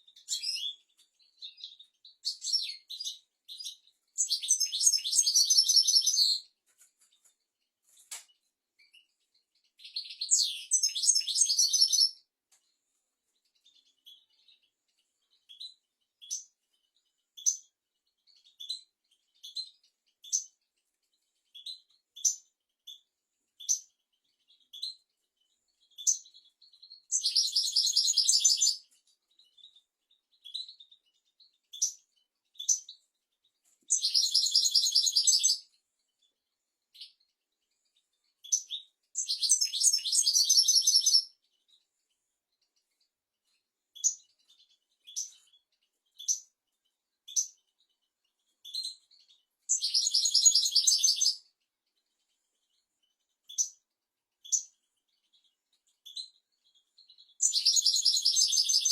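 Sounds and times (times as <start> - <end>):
goldfinch twittering song: 0.0 - 6.5, 8.1 - 12.2, 13.4 - 36.2, 36.9 - 41.8, 43.9 - 53.8, 54.4 - 58.9
short bird chirps: 0.0 - 12.2, 21.4 - 33.0, 33.8 - 35.8, 36.9 - 41.9, 48.6 - 51.5, 54.4 - 58.9.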